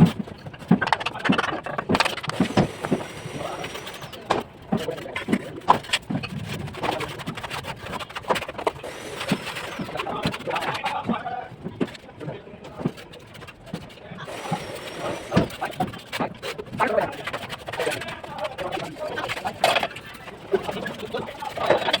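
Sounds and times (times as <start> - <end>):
trowel tapping bricks: 0.0 - 11.1
background voices: 1.2 - 5.2.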